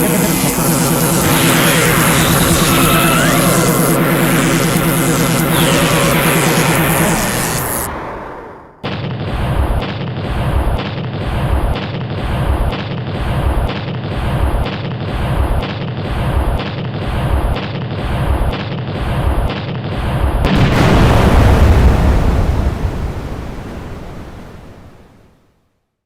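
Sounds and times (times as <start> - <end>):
pulsing synthesized blast: 0.0 - 8.8, 20.5 - 23.9
explosion noise: 20.5 - 25.4.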